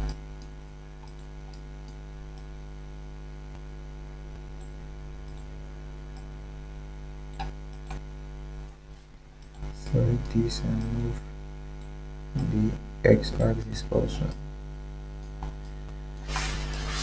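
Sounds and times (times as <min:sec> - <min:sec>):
faint clicks: 0:00.0 - 0:02.5, 0:04.6 - 0:05.5, 0:07.3 - 0:11.0
electrical mains hum: 0:00.0 - 0:17.0.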